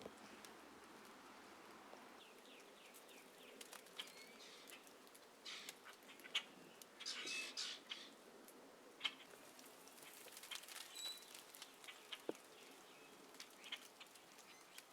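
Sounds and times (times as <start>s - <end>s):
small birds chirping: 2.1s - 8.2s, 9.0s - 14.9s.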